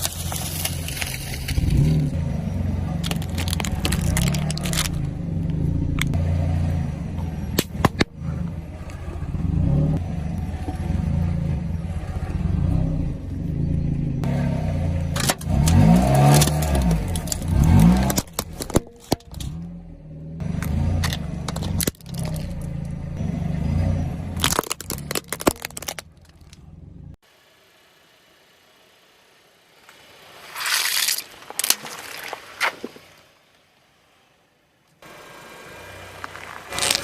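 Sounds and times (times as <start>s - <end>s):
objects cracking under tyres: 0.0s - 2.2s, 2.9s - 6.2s, 15.1s - 19.7s, 20.4s - 23.1s, 24.3s - 26.7s, 29.9s - 33.2s, 36.2s - 37.0s
engine revving: 0.0s - 27.2s, 35.0s - 37.0s
car engine running: 0.0s - 31.0s, 35.0s - 37.0s.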